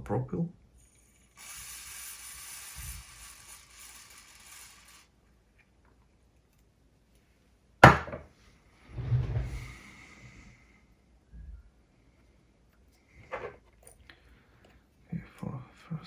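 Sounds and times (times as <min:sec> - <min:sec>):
spray hissing: 0:01.3 - 0:05.1
hard object knocking on workbench: 0:07.8 - 0:08.3.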